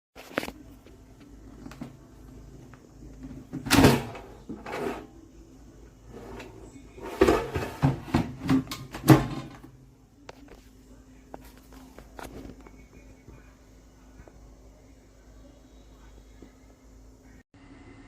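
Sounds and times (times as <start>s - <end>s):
objects knocking and clattering: 7.0s - 9.8s.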